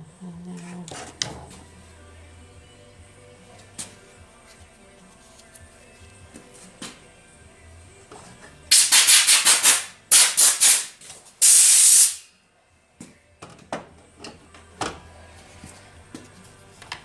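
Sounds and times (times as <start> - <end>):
short hiss: 8.7 - 12.3.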